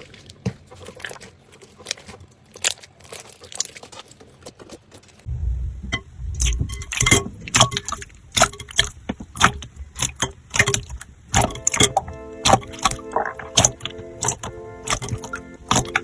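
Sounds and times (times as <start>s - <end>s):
slime squeezed with wet pops: 6.4s - 16.0s
music: 11.4s - 16.0s.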